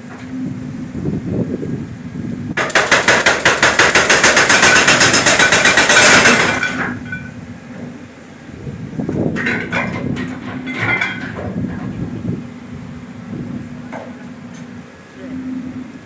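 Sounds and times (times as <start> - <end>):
jackhammer breaking concrete: 2.6 - 7.3.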